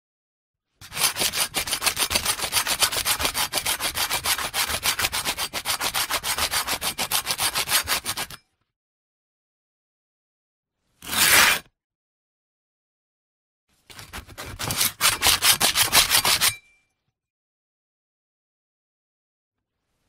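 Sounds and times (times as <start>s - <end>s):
sandpaper rubbing back and forth: 0.8s - 8.4s, 14.1s - 16.5s.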